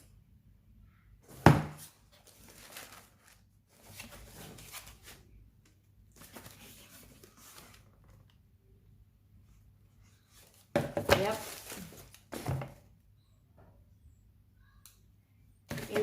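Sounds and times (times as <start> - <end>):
paper rustling and crinkling: 1.3 - 5.3, 6.1 - 8.4, 10.3 - 12.6.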